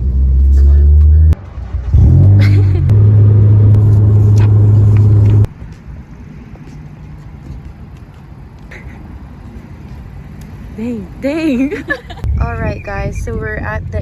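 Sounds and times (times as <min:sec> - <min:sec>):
car rumbling on the move: 0:00.0 - 0:05.6
steady background noise: 0:03.9 - 0:14.0.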